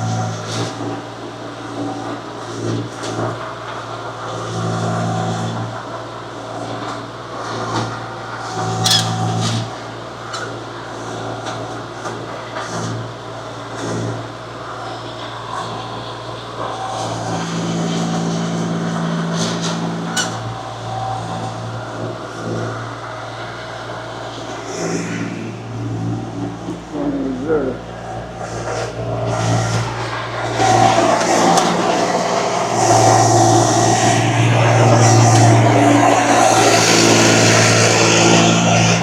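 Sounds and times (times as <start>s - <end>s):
earthmoving machine engine running: 0.0s - 39.0s
sharp metal clank: 8.8s - 9.5s.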